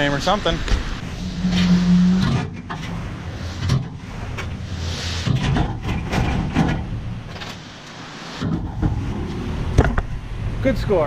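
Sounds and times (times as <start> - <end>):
vehicle engine hum: 0.0 - 11.0
scrap metal clattering: 1.0 - 7.7.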